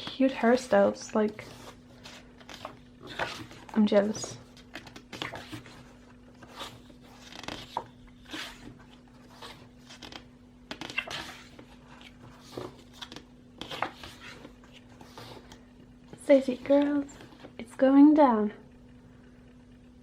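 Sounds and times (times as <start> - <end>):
faint steady hum: 0.0 - 20.0
pages being turned: 0.3 - 15.6.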